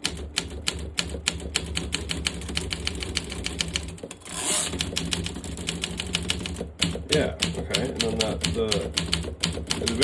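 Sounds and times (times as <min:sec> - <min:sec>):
typewriter keys clacking: 0:04.7 - 0:10.0.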